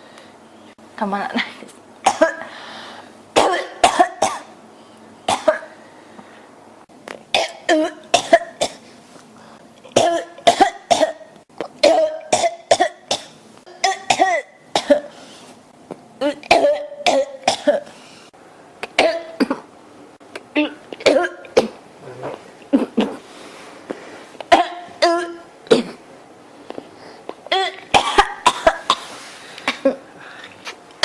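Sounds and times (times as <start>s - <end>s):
person coughing: 3.4s - 4.5s, 5.3s - 5.7s, 7.4s - 8.8s, 9.9s - 15.1s, 16.2s - 17.9s, 19.0s - 19.7s, 20.6s - 23.2s, 24.5s - 26.0s, 27.5s - 30.1s.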